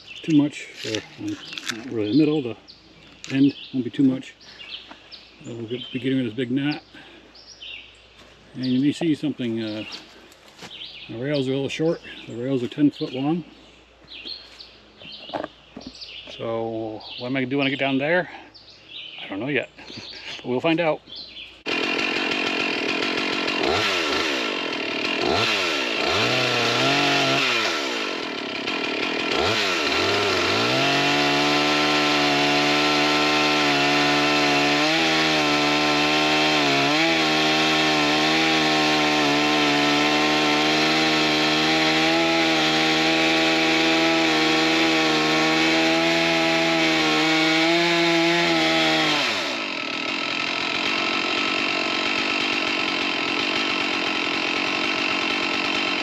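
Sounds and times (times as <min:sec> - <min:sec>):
chainsaw cutting through log: 0:00.0 - 0:02.4, 0:21.6 - 0:56.0.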